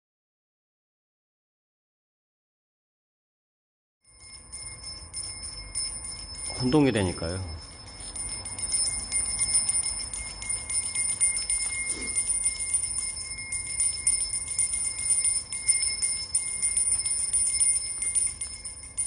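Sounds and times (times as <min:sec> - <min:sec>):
small bells jingling: 0:04.1 - 0:19.0.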